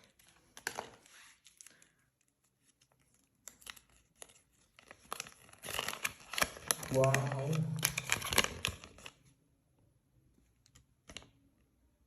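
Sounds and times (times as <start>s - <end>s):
wrapper crinkling: 3.5s - 9.2s.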